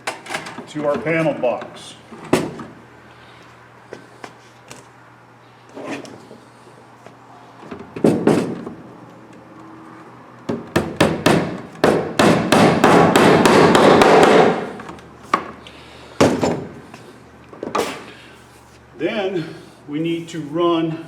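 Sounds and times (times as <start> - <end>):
hammering: 10.5 - 14.8.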